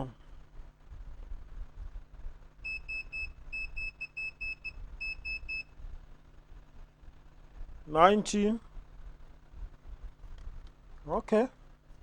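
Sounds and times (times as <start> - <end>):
electronic beeper short high beeps: 2.7 - 5.6.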